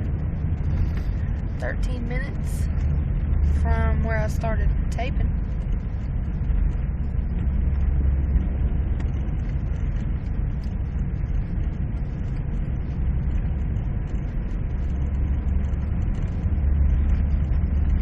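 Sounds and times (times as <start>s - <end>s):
vehicle engine and road rumble: 0.0s - 18.0s.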